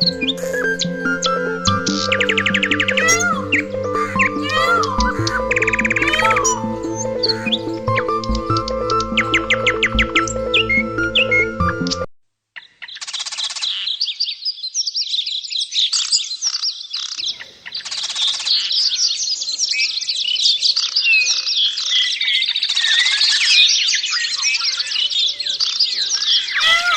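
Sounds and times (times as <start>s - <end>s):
small birds chirping and twittering: 0.0s - 11.3s, 12.6s - 26.9s
harsh buzzy bird calls: 2.2s - 8.0s, 21.6s - 26.9s.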